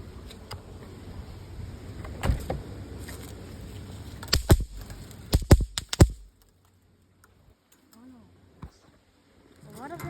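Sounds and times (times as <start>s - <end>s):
sharp knocks and clunks: 4.3s - 6.3s.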